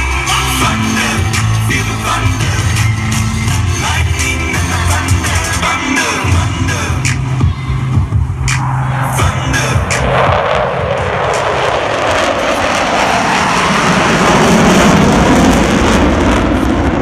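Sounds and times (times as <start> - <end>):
jet roar on flyby: 0.0 - 17.0.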